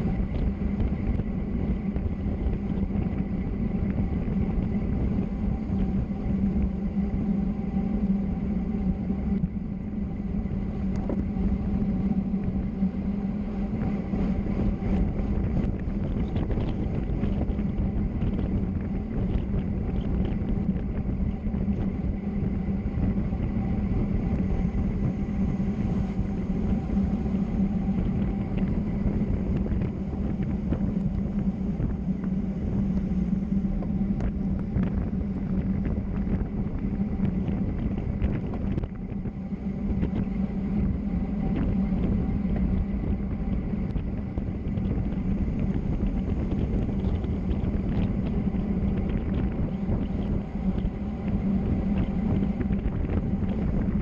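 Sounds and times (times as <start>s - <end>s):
vehicle driving hum: 0.0s - 54.0s.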